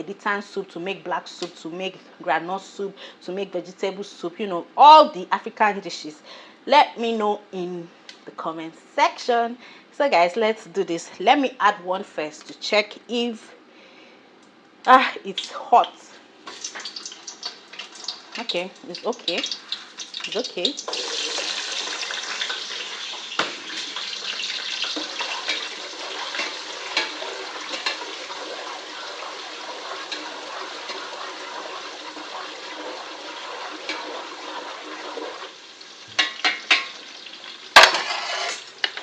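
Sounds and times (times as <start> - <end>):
onions sizzling in oil: 16.4 - 39.0.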